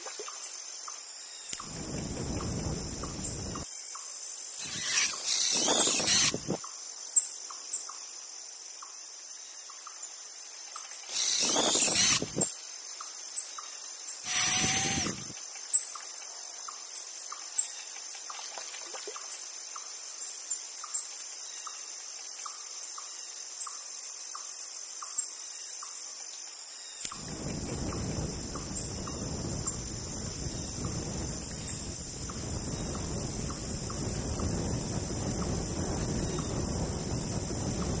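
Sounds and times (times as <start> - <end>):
crickets chorus: 0.0 - 38.0
faint regular chirps: 14.3 - 15.4.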